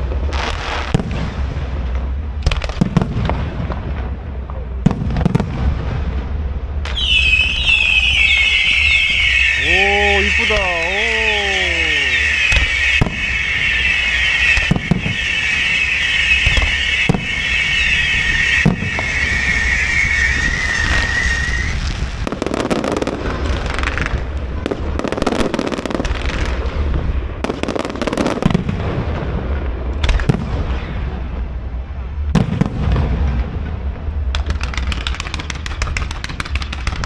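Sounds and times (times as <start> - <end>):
firework bangs: 0.0 - 37.0
firework crackling: 0.0 - 37.0
whistling firework shells: 6.8 - 24.2, 34.4 - 37.0.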